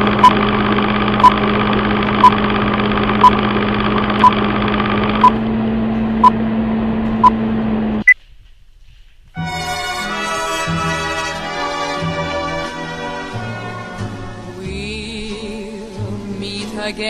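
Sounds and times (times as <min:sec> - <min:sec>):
machine hum: 0:00.0 - 0:08.9.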